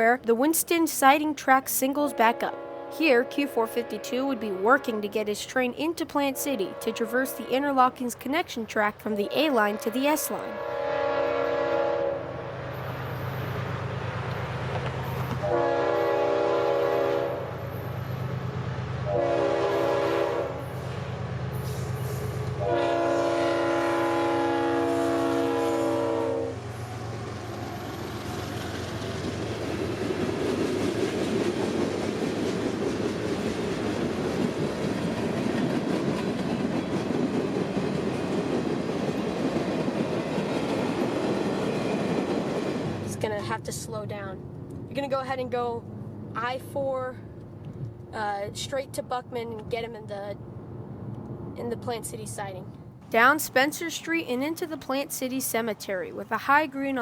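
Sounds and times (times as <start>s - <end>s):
diesel locomotives droning: 0.0s - 48.4s, 53.0s - 57.0s
train air horn blasts: 2.1s - 5.1s, 6.3s - 7.5s, 9.4s - 12.5s, 15.4s - 17.6s, 19.1s - 20.8s, 22.5s - 26.6s
train wheels rumbling on rails: 12.6s - 16.5s, 24.8s - 44.9s.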